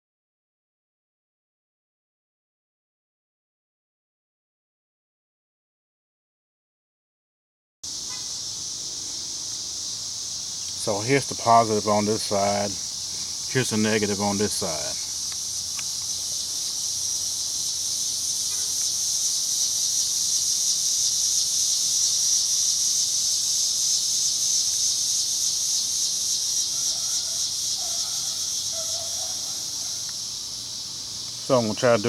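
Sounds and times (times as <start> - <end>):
insects trilling: 7.8 - 32.0.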